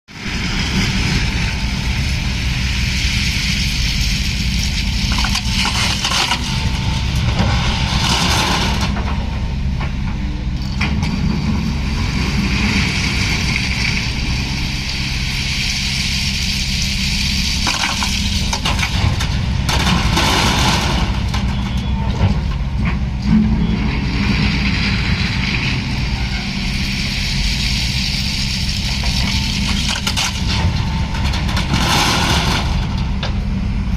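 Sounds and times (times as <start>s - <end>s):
excavator diesel engine: 0.1s - 33.9s.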